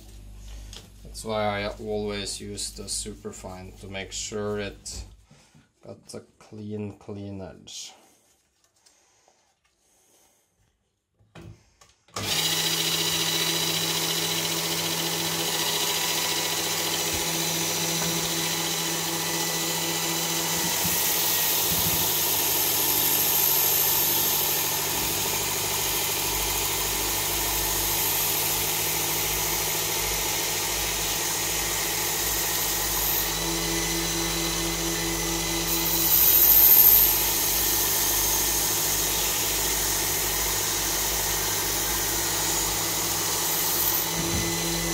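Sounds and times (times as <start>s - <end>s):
belt sharpener humming: 12.2s - 44.9s.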